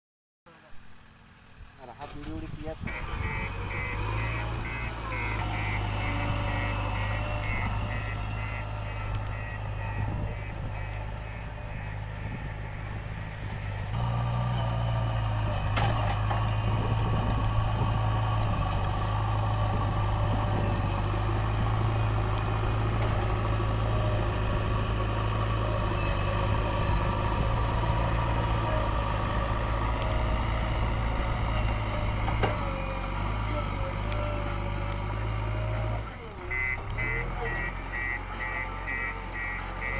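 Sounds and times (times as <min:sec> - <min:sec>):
diesel engine running: 0:01.9 - 0:39.9
rapid repeating beep: 0:03.3 - 0:10.9.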